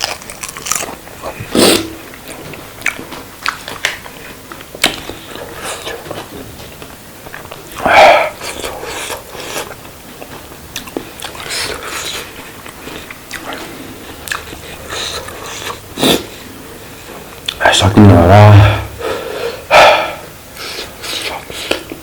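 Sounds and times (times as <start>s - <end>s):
biting and chewing: 0.0s - 16.4s.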